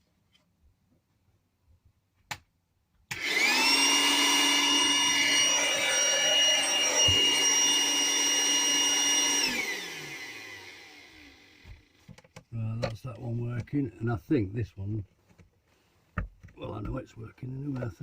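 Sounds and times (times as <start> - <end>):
electric pump whining: 3.1 - 12.0.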